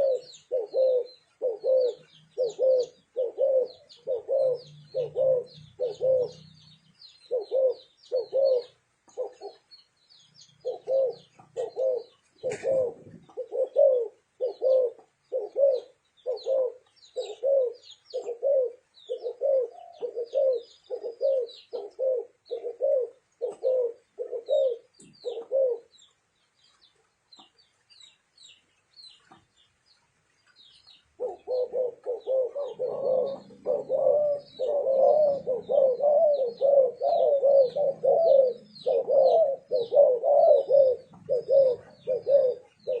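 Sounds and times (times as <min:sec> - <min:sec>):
doves cooing: 0:00.0 - 0:26.1, 0:31.0 - 0:43.0
small birds chirping faintly: 0:00.0 - 0:43.0.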